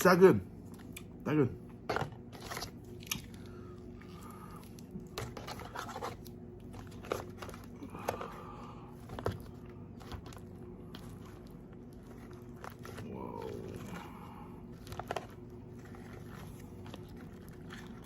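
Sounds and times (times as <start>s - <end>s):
steady low hum: 0.0s - 18.0s
paper wrapper crinkling: 9.0s - 18.0s.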